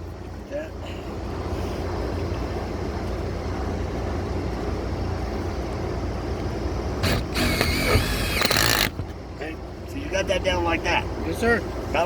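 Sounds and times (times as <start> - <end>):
screw gun whining: 7.0 - 9.1.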